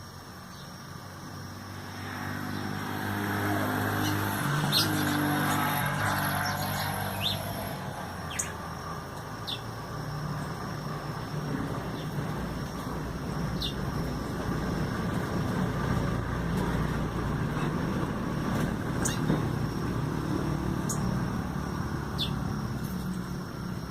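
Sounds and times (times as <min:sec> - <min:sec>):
low rumble of road traffic: 0:00.0 - 0:23.9
high bird chirps: 0:08.2 - 0:08.6, 0:19.0 - 0:19.3.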